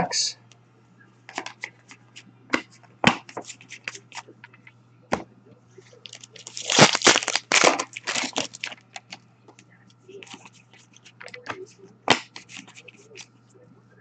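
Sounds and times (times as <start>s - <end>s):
wrapper crinkling: 6.0s - 9.2s.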